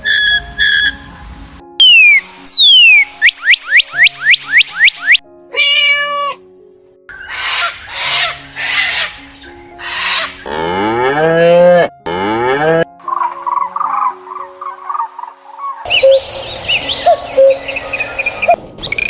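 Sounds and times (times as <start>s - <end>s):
soft background music: 0.0s - 19.0s
cow mooing: 10.4s - 12.9s.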